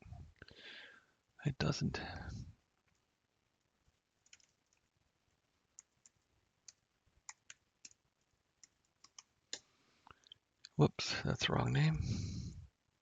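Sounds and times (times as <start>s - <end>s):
keyboard keys clicking: 4.2s - 4.9s, 5.8s - 8.0s, 8.6s - 9.3s.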